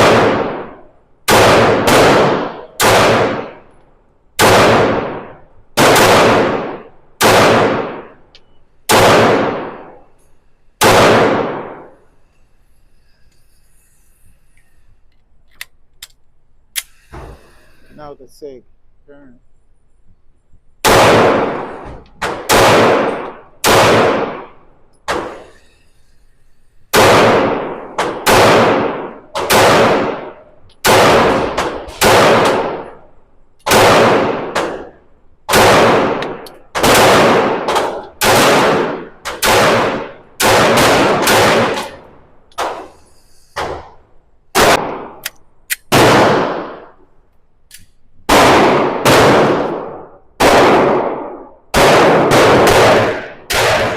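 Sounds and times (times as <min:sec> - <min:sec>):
pistol shots with echo: 0:00.0 - 0:03.7, 0:04.4 - 0:08.2, 0:08.9 - 0:10.0, 0:10.8 - 0:12.0, 0:20.8 - 0:25.6, 0:26.9 - 0:33.1, 0:33.7 - 0:42.0, 0:43.6 - 0:45.2, 0:45.9 - 0:47.0, 0:48.3 - 0:53.9.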